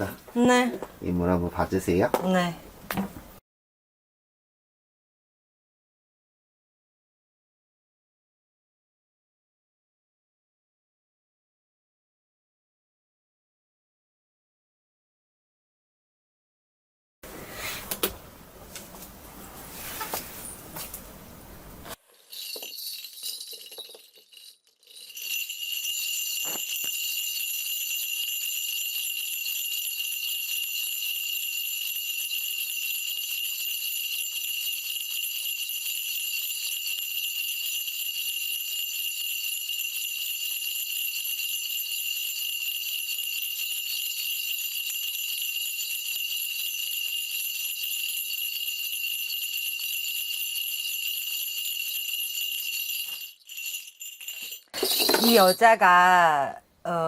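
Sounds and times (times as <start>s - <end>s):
brass bells jingling: 22.0s - 56.0s.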